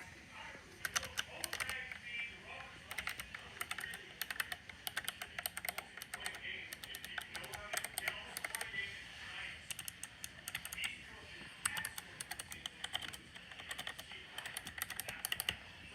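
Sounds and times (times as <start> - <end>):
keyboard typing clicks: 0.8 - 2.0, 2.9 - 8.7, 9.7 - 10.9, 11.6 - 15.6.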